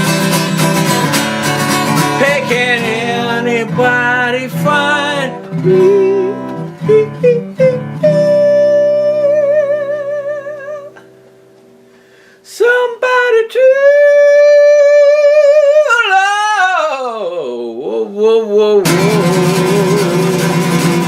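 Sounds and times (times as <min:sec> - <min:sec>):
acoustic guitar chord ringing: 0:00.0 - 0:12.4, 0:18.8 - 0:21.0
person singing with vibrato: 0:01.7 - 0:11.1, 0:12.4 - 0:21.0.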